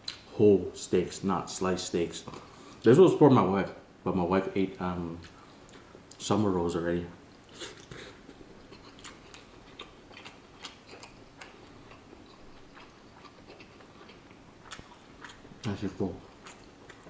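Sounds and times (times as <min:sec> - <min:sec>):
person chewing: 0:07.3 - 0:17.0.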